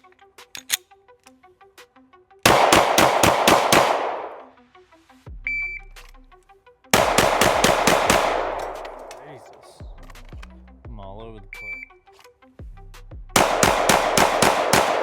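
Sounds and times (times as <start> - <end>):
faint background music: 0.0 - 15.0
pistol shots echoing: 2.5 - 4.5, 7.0 - 9.8, 13.4 - 15.0
electronic timer beep: 5.5 - 5.9, 11.5 - 11.9.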